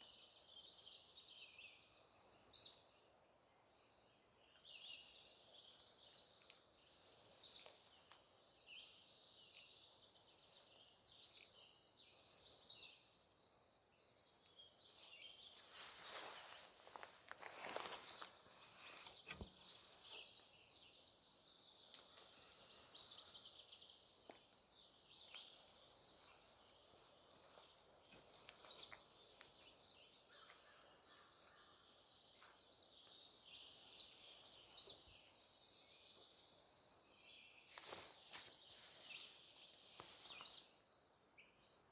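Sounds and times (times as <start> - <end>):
songbirds trilling: 14.5 - 41.9.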